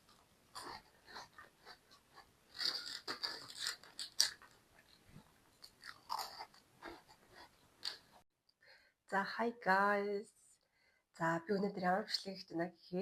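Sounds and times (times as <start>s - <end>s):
crunching crisp pastry: 0.0s - 8.2s.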